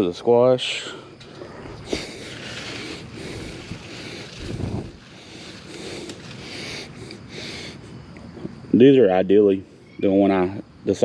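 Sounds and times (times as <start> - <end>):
wind buffeting microphone: 1.7 - 6.4.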